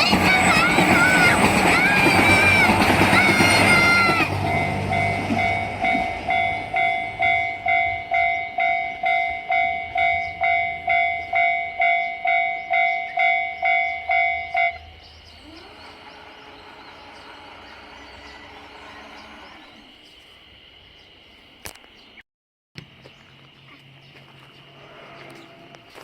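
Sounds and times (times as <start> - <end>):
level crossing warning bell: 0.0 - 20.0.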